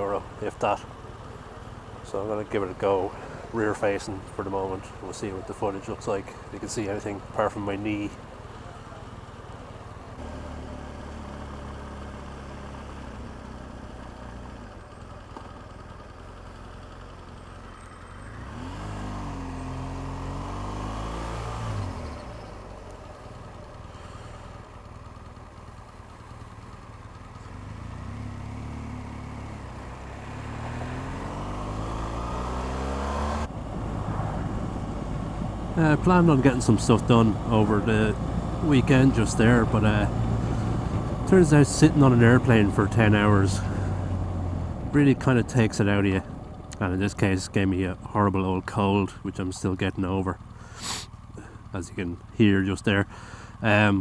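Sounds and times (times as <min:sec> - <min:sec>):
motorcycle engine revving: 0:06.7 - 0:46.8.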